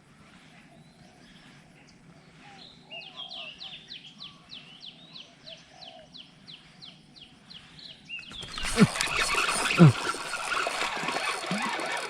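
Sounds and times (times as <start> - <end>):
dove-like cooing: 8.3 - 12.0.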